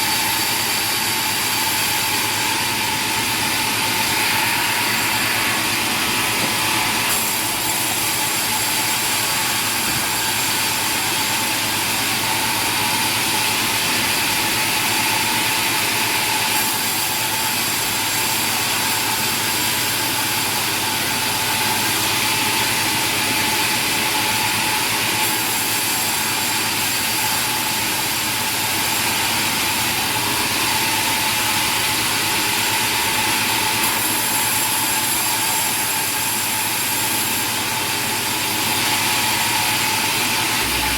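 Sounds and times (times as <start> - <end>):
sawmill machinery drone: 0.0 - 40.9.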